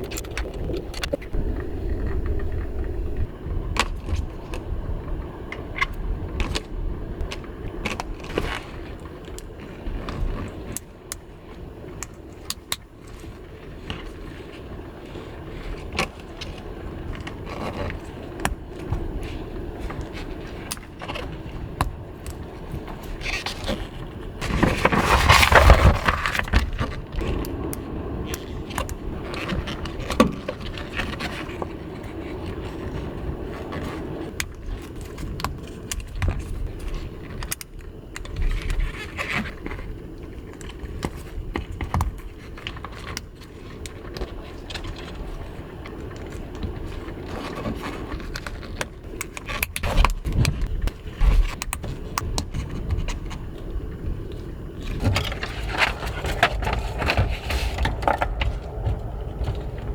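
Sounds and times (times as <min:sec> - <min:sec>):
gusty wind around car: 0:00.0 - 0:08.5.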